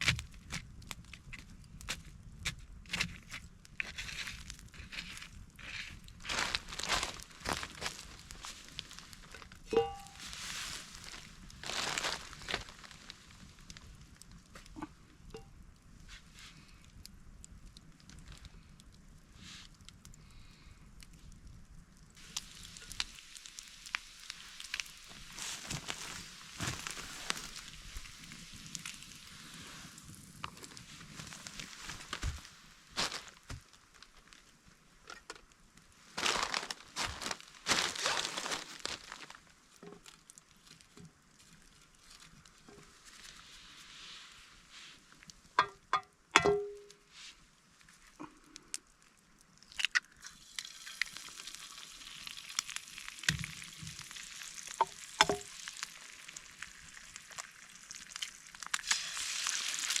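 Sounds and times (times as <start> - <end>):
food sizzling in a pan: 50.4 - 57.9, 58.8 - 60.0.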